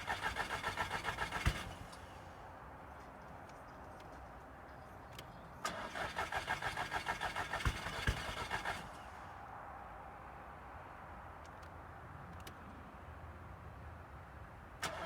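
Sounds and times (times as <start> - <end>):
engine cranking on starter: 0.0 - 2.1, 5.6 - 9.0.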